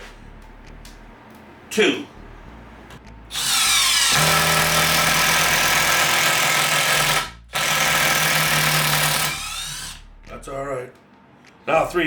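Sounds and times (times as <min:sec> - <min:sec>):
cordless drill motor whine: 0:03.3 - 0:10.0.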